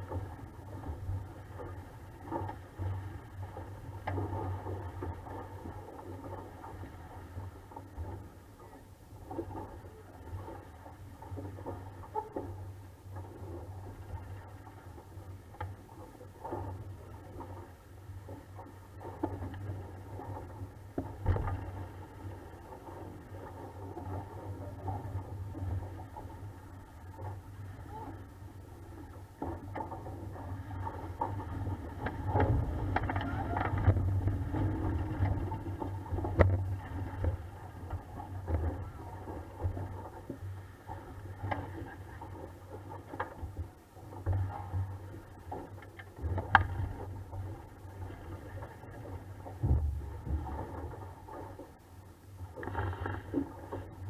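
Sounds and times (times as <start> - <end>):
low rumble with crackle: 0.0 - 54.0
water noise around hull: 0.0 - 54.0
boat knocks: 18.3 - 26.4, 29.1 - 51.8.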